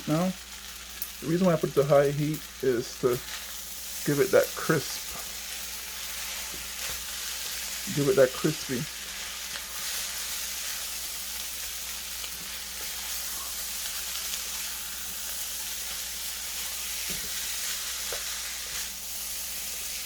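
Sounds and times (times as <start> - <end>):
rice sizzling in a pan: 0.0 - 20.0.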